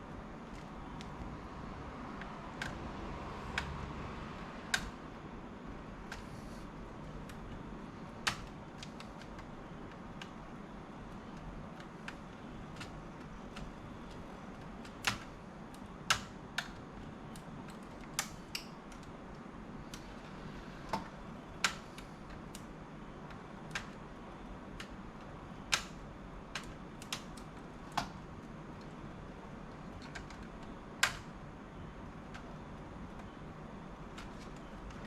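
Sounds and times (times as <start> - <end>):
clicks and taps on laptop parts: 2.2 - 3.8, 4.7 - 5.0, 6.0 - 19.2, 20.9 - 29.0, 29.6 - 31.4, 34.0 - 35.0.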